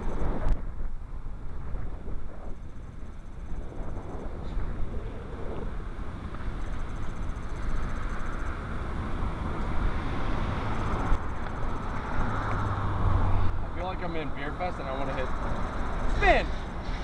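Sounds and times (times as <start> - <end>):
road and engine rumble: 0.0 - 17.0.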